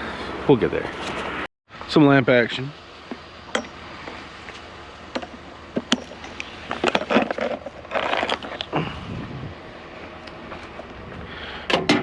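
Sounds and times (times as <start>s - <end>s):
scraping and rattling: 5.2s - 8.9s.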